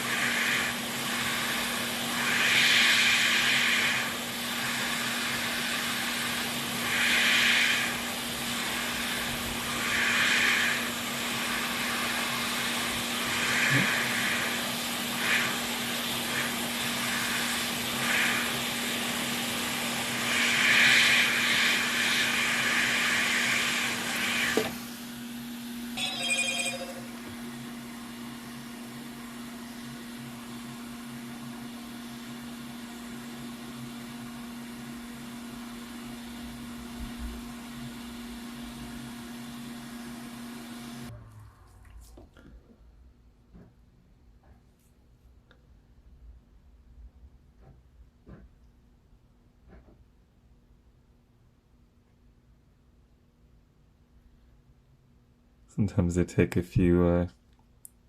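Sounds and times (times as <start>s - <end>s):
air pump hissing: 0.0s - 24.8s
short electronic beep: 26.0s - 27.2s.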